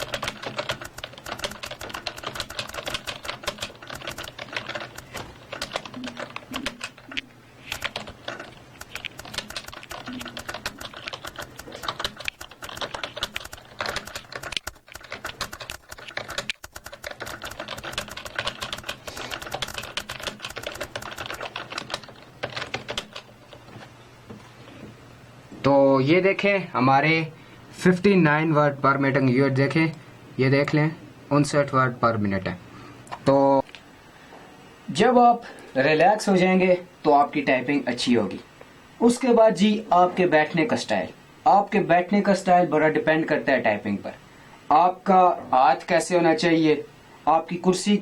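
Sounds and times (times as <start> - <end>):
keyboard typing clicks: 0.0 - 23.6.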